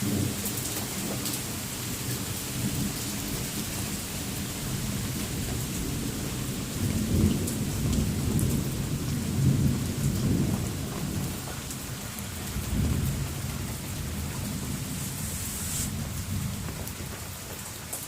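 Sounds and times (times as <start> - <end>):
steady rain: 0.0 - 18.0
thunder rumbling: 4.6 - 17.2.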